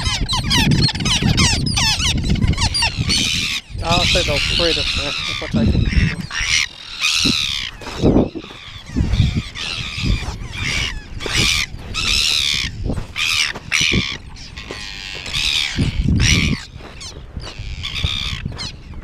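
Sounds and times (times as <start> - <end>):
birds squawking: 0.0 - 19.0.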